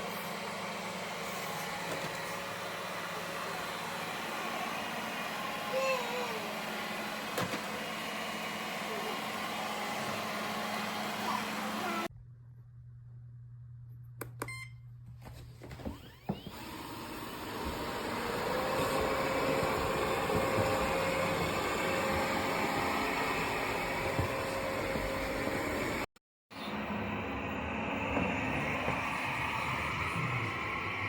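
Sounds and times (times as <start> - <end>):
robot vacuum motor whining: 0.0 - 12.1, 15.8 - 26.0.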